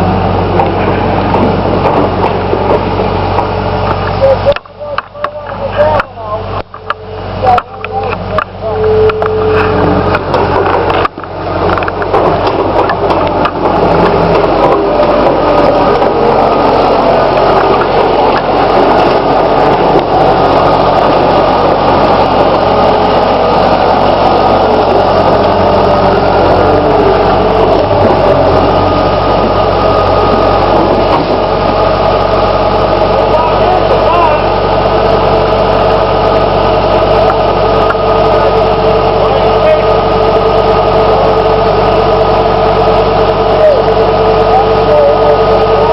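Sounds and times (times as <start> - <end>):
diesel engine running: 0.0 - 45.9.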